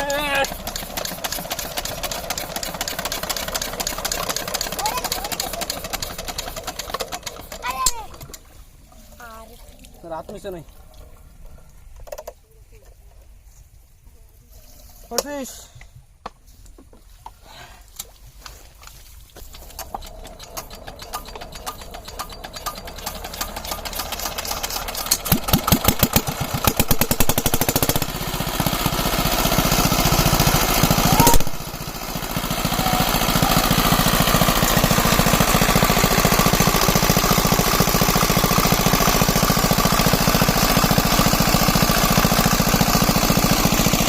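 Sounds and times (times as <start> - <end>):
diesel pump engine running: 0.0 - 8.4, 19.4 - 44.0
sharp engine knock: 20.1 - 31.7.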